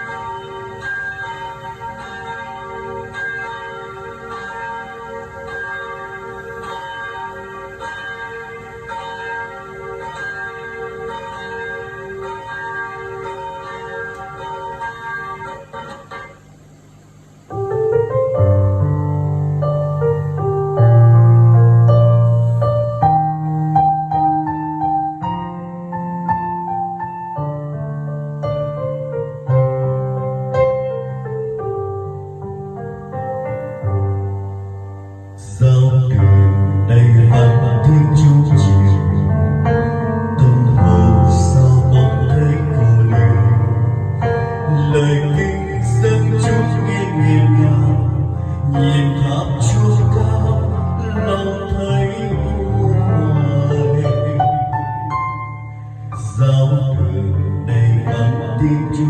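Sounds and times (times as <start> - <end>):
church bells ringing: 0.0 - 16.4, 40.4 - 43.8, 44.7 - 54.4
long held bass notes: 0.0 - 59.0
slow piano melody: 0.0 - 59.0.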